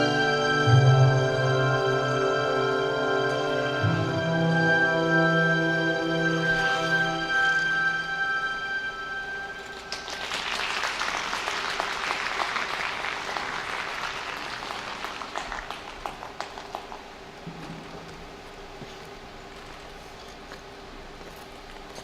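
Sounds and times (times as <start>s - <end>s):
audience applauding: 9.6s - 17.2s.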